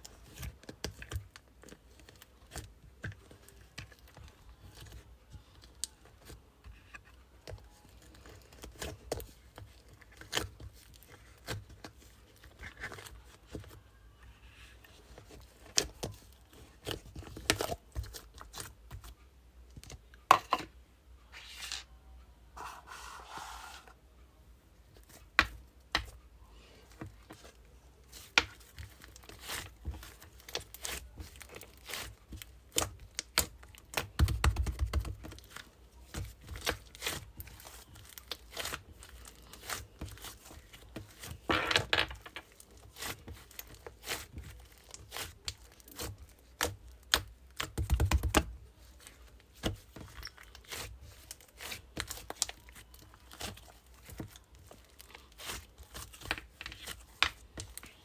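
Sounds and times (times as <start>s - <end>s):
croissant pastry crunching: 28.3s - 58.0s.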